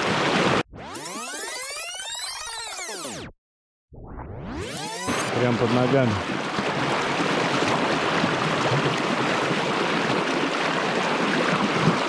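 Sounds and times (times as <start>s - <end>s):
river current rushing: 5.1s - 12.0s.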